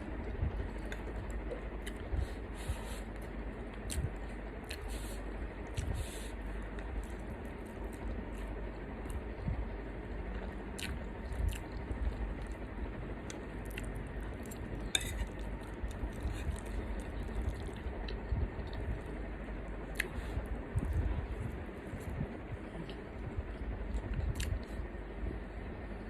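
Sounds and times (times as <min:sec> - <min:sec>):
steady low hum: 0:00.0 - 0:26.0
person chewing: 0:02.6 - 0:09.3, 0:10.3 - 0:12.6, 0:13.3 - 0:19.1, 0:19.9 - 0:23.1, 0:23.9 - 0:24.8.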